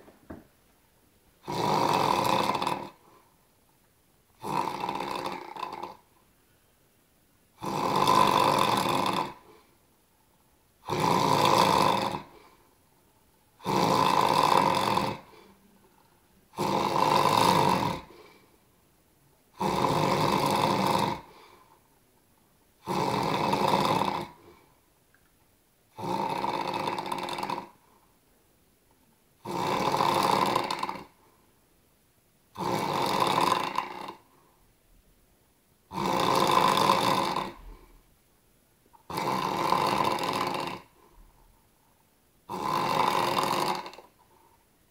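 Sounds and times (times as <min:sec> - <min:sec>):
loud rasping snoring: 0:01.4 - 0:03.1, 0:04.4 - 0:06.0, 0:07.6 - 0:09.6, 0:10.8 - 0:12.6, 0:13.6 - 0:15.6, 0:16.5 - 0:18.4, 0:19.5 - 0:21.6, 0:22.8 - 0:24.6, 0:25.9 - 0:27.8, 0:29.4 - 0:31.2, 0:32.5 - 0:34.3, 0:35.9 - 0:38.0, 0:39.0 - 0:41.2, 0:42.5 - 0:44.2.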